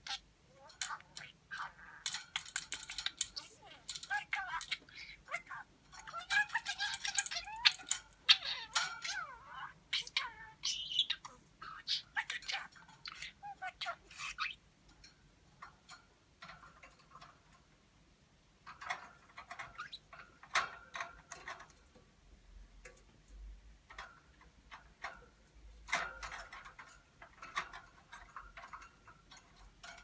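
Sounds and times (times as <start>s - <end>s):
parakeet clicks and chirps: 0.0s - 17.4s, 18.6s - 21.9s, 23.9s - 30.0s.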